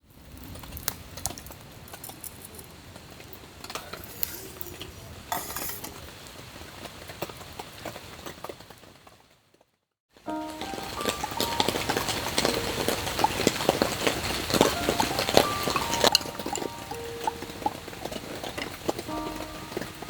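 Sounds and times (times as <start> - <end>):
small hard objects clinking: 0.6 - 2.8, 10.4 - 20.0.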